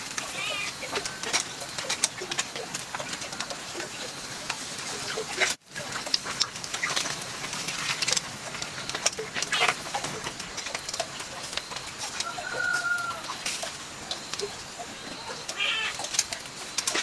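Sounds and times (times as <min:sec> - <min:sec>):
bird calling: 0:00.0 - 0:04.3, 0:11.3 - 0:17.0
clicks and rustling: 0:00.0 - 0:17.0.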